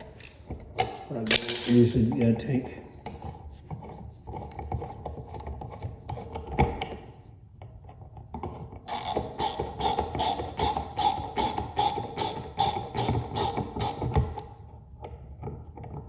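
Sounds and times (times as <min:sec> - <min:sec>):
hand tools clicking and scraping: 0:00.0 - 0:00.6, 0:08.9 - 0:14.3
music with percussive beat: 0:08.9 - 0:14.2.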